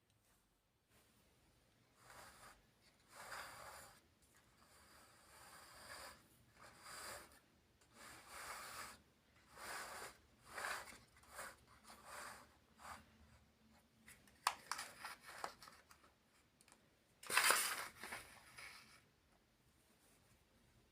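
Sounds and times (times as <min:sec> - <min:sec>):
plastic blocks rubbing and scraping: 0:02.0 - 0:13.4.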